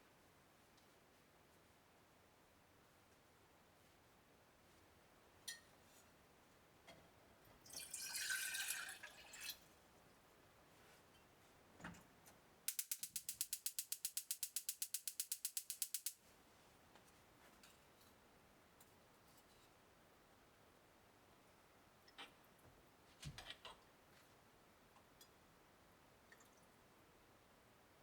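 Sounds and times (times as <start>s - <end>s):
rapid mechanical clicks: 12.7s - 16.2s.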